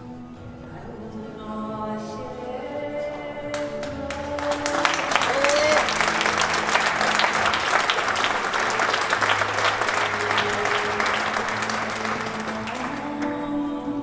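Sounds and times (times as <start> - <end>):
background music: 0.0 - 14.0
audience applauding: 3.5 - 13.6.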